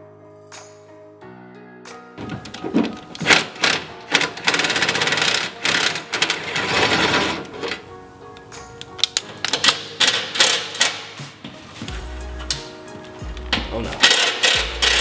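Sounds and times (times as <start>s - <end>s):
background music: 0.0s - 15.0s
pneumatic tool hammering: 2.2s - 7.8s, 9.0s - 11.5s, 13.6s - 15.0s
clicks: 2.2s - 11.6s.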